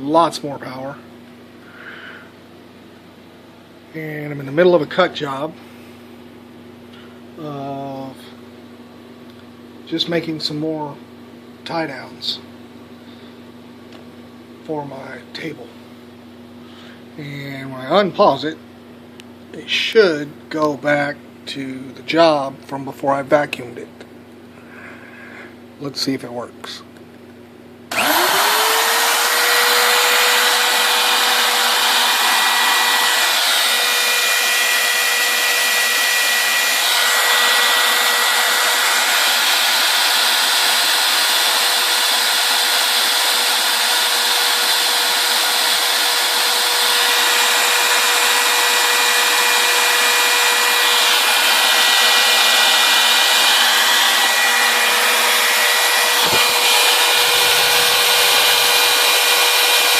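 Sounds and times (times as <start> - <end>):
router whining at high speed: 27.9 - 59.9.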